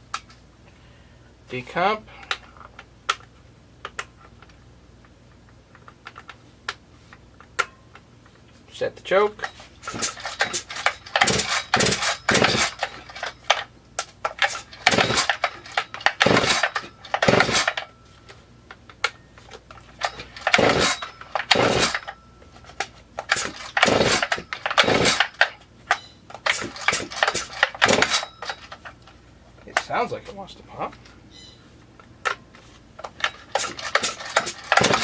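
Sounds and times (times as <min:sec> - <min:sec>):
chainsaw engine turning over: 0:09.4 - 0:13.7, 0:14.3 - 0:17.9, 0:19.9 - 0:22.2, 0:22.8 - 0:28.9, 0:33.1 - 0:35.0.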